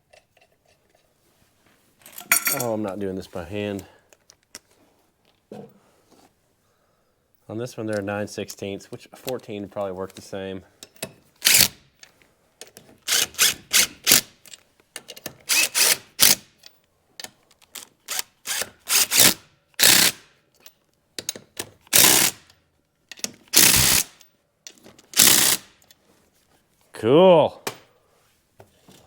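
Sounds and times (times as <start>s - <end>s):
power tool running a socket: 11.4s - 11.7s, 15.5s - 16.4s, 18.1s - 20.2s, 21.9s - 22.4s, 23.6s - 24.2s, 25.2s - 25.7s.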